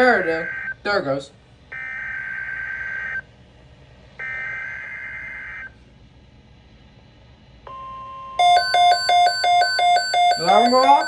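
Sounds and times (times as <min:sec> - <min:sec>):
steady alert tone: 0:08.4 - 0:11.0.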